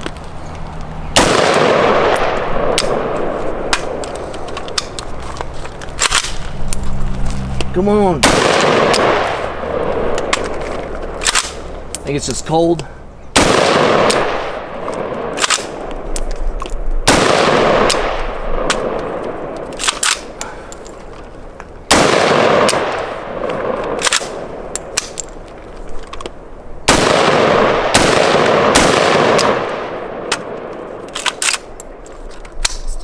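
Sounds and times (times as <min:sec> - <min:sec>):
rifle shots with echo: 0:01.2 - 0:04.1, 0:08.2 - 0:11.7, 0:13.3 - 0:16.0, 0:17.0 - 0:20.4, 0:21.8 - 0:25.2, 0:26.8 - 0:31.8.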